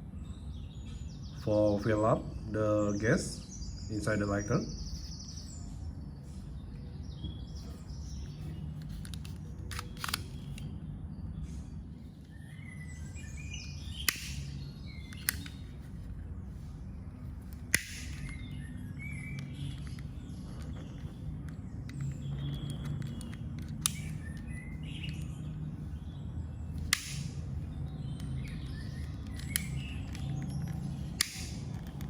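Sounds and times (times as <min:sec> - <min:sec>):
birds chirping: 0:00.0 - 0:32.0
steady low hum: 0:00.0 - 0:32.0
sharp clicks: 0:08.2 - 0:10.8, 0:13.6 - 0:16.2, 0:17.4 - 0:25.7, 0:26.7 - 0:32.0.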